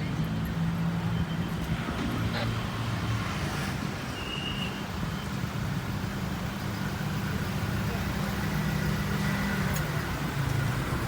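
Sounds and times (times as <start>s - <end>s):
vehicle engine hum and road noise: 0.0s - 11.0s.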